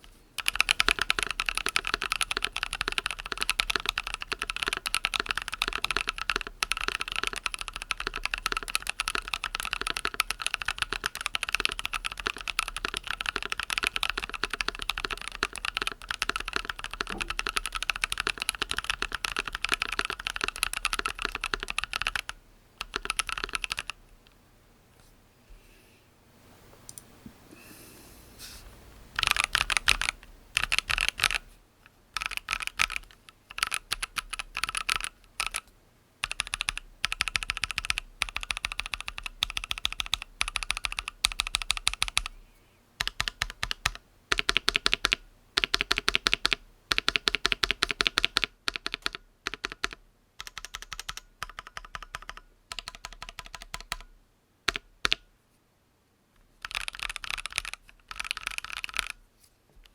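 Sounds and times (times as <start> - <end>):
mechanical keyboard key clacks: 56.6 - 59.1.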